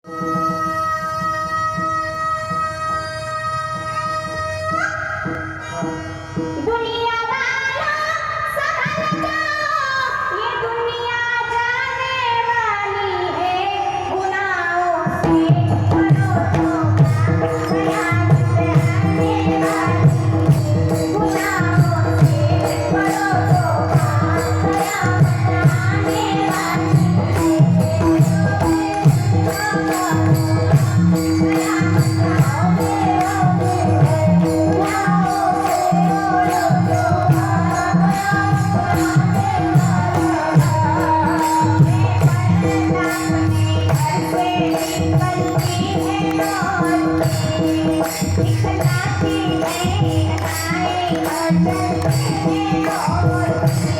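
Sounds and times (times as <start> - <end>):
jingling metal percussion: 0.1 - 9.6, 15.0 - 53.9.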